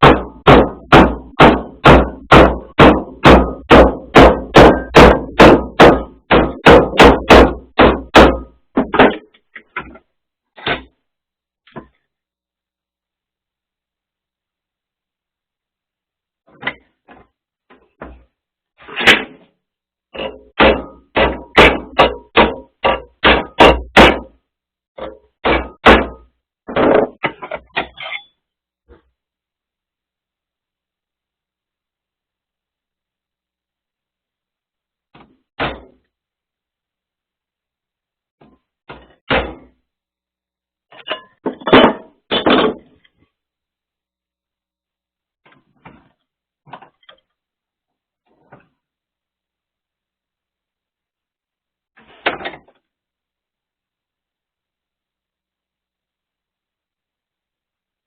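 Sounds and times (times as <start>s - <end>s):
hammer striking steel strip: 0.0s - 9.3s, 20.2s - 24.3s, 25.0s - 28.4s.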